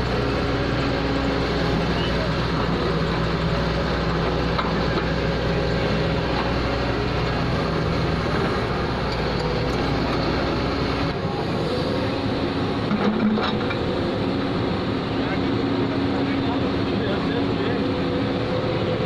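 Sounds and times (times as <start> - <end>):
deep engine hum: 0.0 - 13.0
diesel engines running: 0.0 - 19.0.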